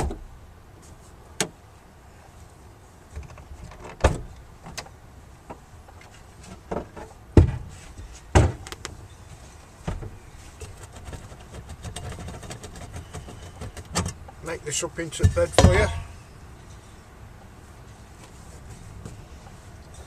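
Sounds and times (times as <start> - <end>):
sharp knocks and thumps: 6.5 - 8.9, 15.1 - 16.2.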